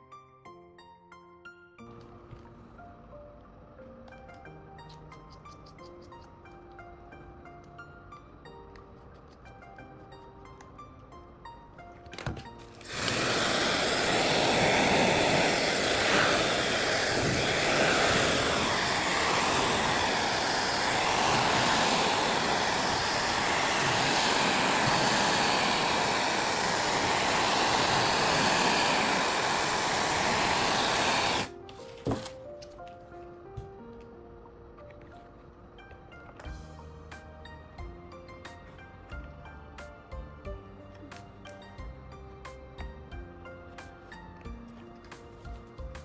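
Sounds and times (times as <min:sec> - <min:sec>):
faint background music: 0:00.0 - 0:13.0, 0:31.5 - 0:46.0
rushing blowing air: 0:12.8 - 0:31.5.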